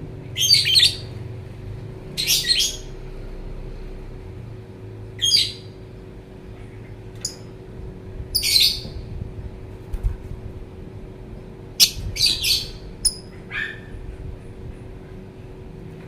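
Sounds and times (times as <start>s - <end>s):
bird shrill chirping: 8.4s - 8.8s.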